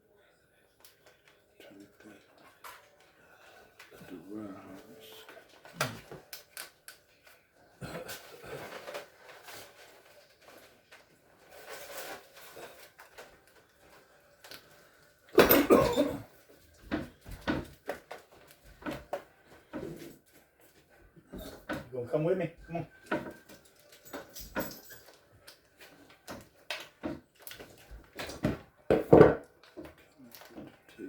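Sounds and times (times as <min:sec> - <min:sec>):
clicks and knocks of refrigerator parts: 0:16.7 - 0:20.0, 0:23.0 - 0:30.9.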